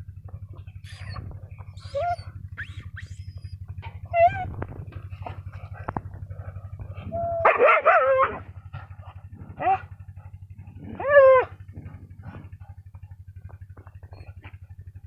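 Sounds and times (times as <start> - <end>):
dog whining: 0.6 - 8.4, 9.1 - 12.7, 14.0 - 14.6
dog barking: 7.2 - 8.5, 9.5 - 10.0.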